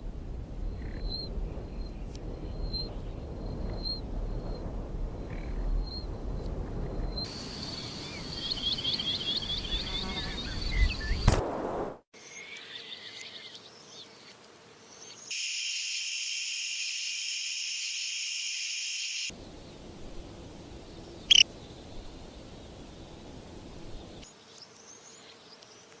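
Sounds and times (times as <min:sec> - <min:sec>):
songbirds chirping: 0:00.4 - 0:11.3, 0:12.2 - 0:15.3, 0:19.2 - 0:26.0
high-pitched insect drone: 0:15.3 - 0:19.8, 0:20.8 - 0:21.5.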